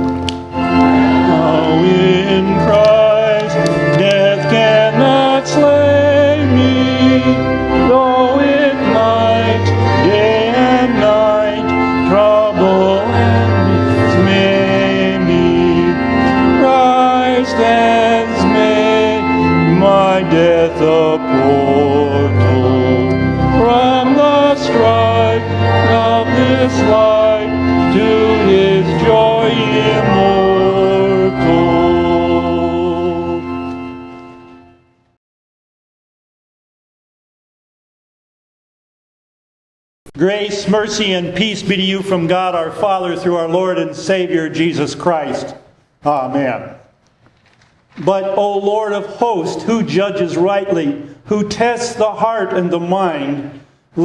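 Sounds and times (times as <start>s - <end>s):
sustained instrumental accompaniment: 0.0s - 35.2s
voices singing a hymn: 0.6s - 34.5s.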